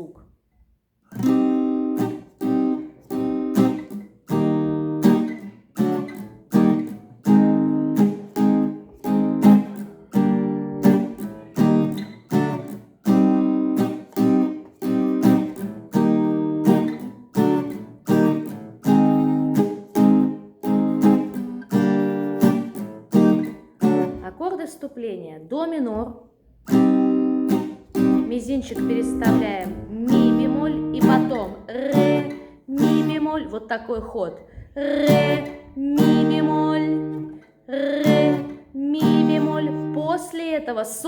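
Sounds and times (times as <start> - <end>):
acoustic guitar strumming: 1.1 - 24.5, 26.6 - 34.1, 34.8 - 40.7.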